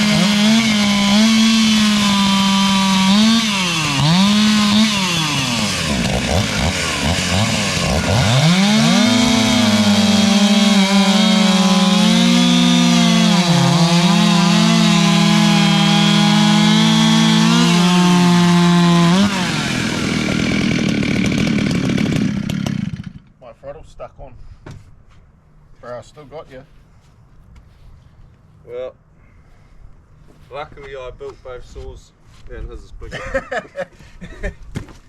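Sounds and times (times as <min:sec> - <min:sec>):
chainsaws cutting through log: 0:00.0 - 0:23.2.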